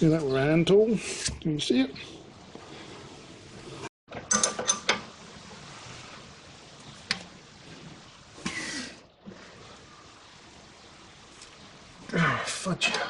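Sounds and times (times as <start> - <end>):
rustling scrape: 5.4 - 6.5.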